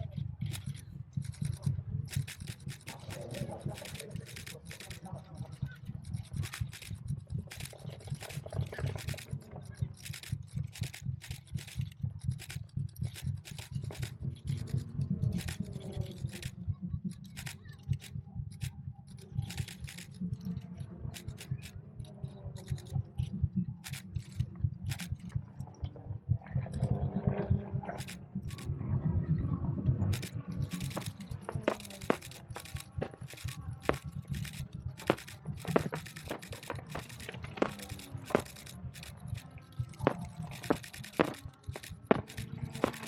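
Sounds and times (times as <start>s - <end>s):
steady low rumble: 0.0s - 43.0s
camera shutter clicks: 30.2s - 39.4s, 40.0s - 43.0s.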